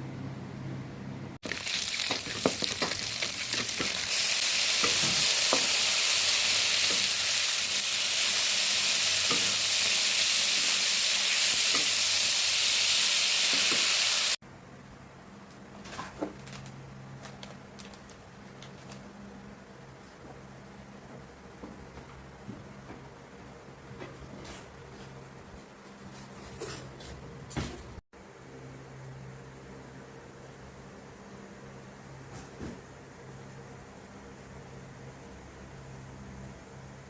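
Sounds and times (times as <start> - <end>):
vegetables sizzling in a pan: 1.4 - 14.4.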